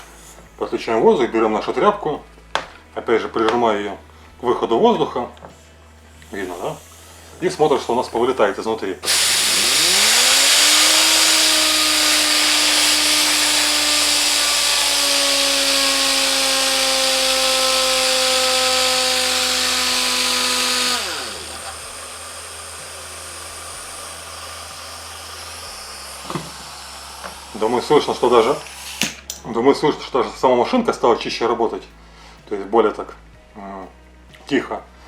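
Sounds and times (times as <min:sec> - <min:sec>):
compressed air hiss: 0:00.0 - 0:01.1, 0:06.0 - 0:29.3
pneumatic sander whine: 0:00.0 - 0:01.1, 0:06.2 - 0:29.3.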